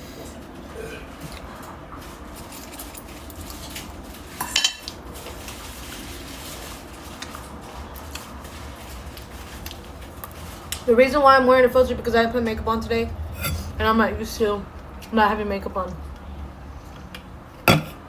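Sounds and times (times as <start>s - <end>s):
utensils scraping against dishes: 13.3s - 13.8s.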